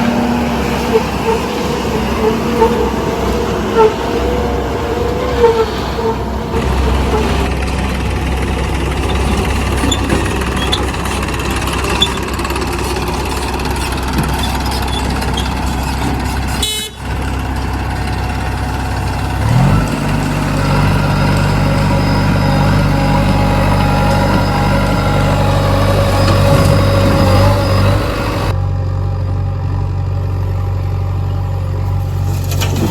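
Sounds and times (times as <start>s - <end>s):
engine revving: 0.0s - 28.6s
diesel engines running: 0.0s - 32.9s.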